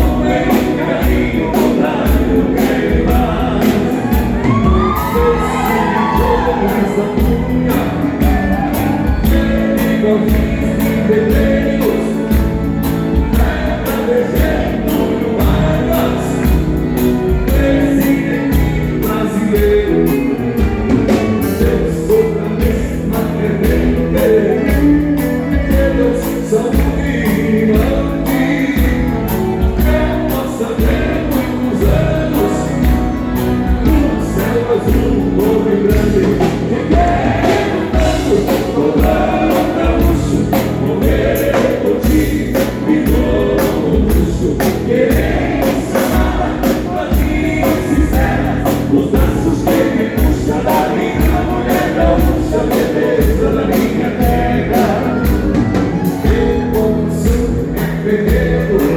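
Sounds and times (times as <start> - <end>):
steady drum beat: 0.0 - 58.9
voices singing together: 0.0 - 58.9.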